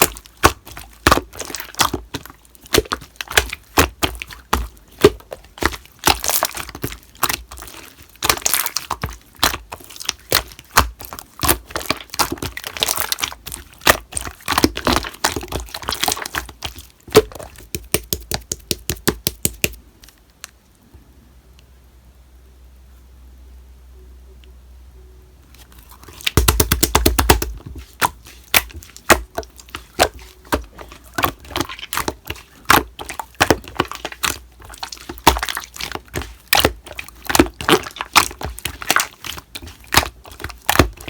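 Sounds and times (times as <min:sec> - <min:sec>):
slime clicking and popping: 0:00.0 - 0:19.8, 0:26.1 - 0:41.0
faint low hum: 0:19.8 - 0:40.6.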